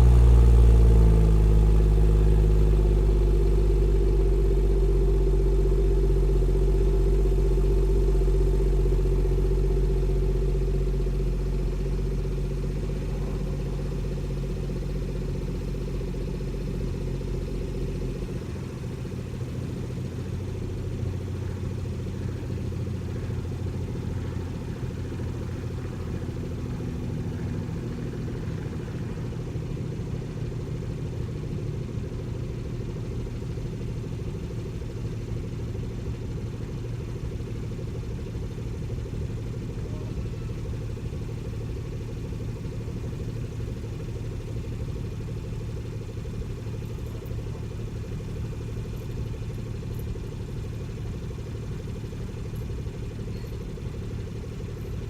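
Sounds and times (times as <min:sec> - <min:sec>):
car engine droning: 0:00.0 - 0:55.0.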